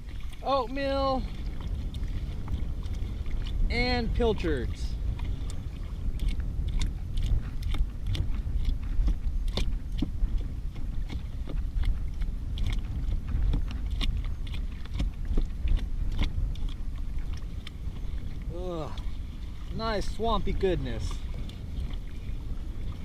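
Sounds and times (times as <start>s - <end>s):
steady low rumble: 0.0s - 23.0s.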